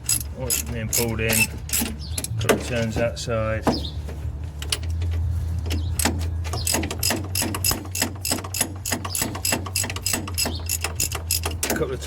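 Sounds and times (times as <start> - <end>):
ratchet wrench clicking: 0.0 - 2.4, 5.7 - 12.0.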